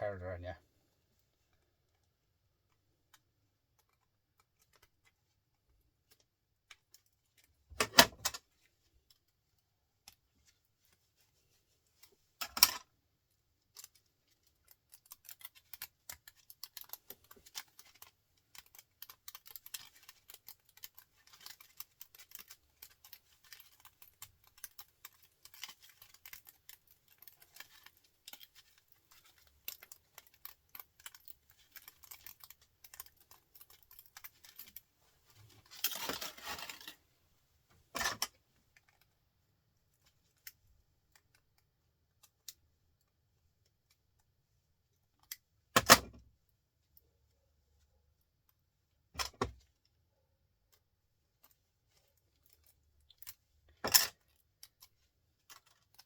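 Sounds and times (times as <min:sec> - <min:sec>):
wire clicking and rustling: 0:06.0 - 0:37.1.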